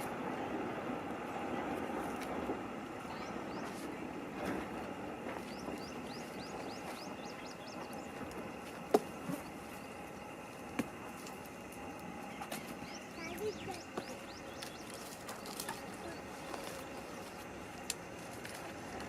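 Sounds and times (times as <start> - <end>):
small bird chirping: 5.5 - 8.1, 12.6 - 16.5.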